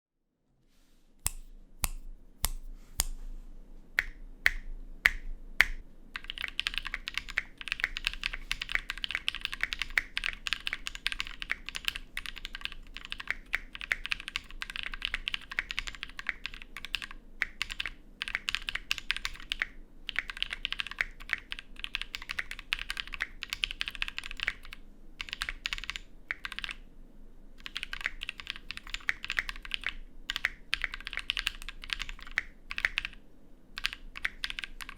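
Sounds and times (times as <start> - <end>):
mechanical keyboard typing: 6.2 - 26.8, 27.6 - 33.2, 33.8 - 34.9.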